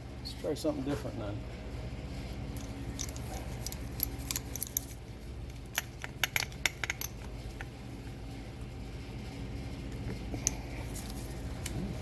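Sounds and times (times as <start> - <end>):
steady low hum: 0.0 - 12.0
metal tools clinking: 2.6 - 5.0.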